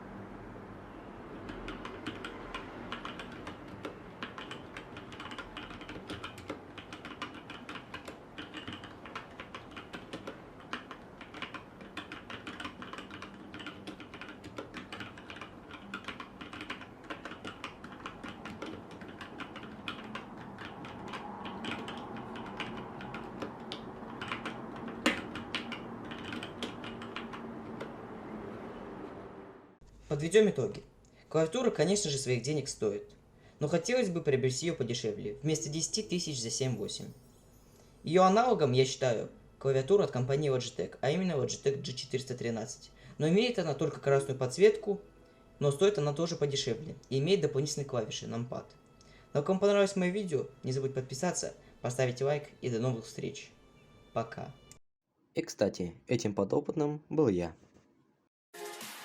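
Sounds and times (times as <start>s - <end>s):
mechanical keyboard typing: 1.4s - 28.0s.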